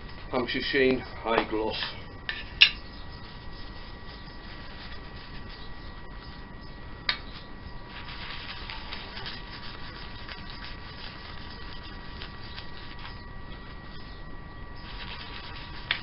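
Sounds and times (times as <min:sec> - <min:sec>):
faint steady hum: 0:00.0 - 0:16.0
wax rubbing hiss: 0:02.8 - 0:06.5, 0:07.1 - 0:14.2, 0:14.8 - 0:16.0.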